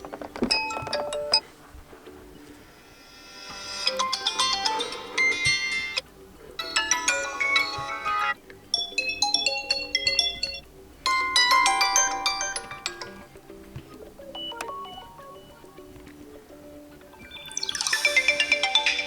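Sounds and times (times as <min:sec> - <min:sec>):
phone ringtone melodies: 0:00.0 - 0:01.5, 0:02.3 - 0:19.0.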